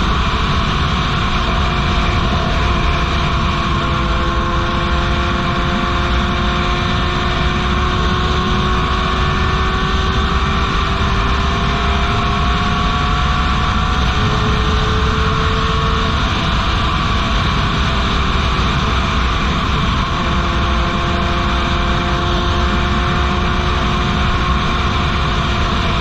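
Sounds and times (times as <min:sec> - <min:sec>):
constant rushing noise: 0:00.0 - 0:26.0
motorcycle engine running: 0:00.0 - 0:26.0.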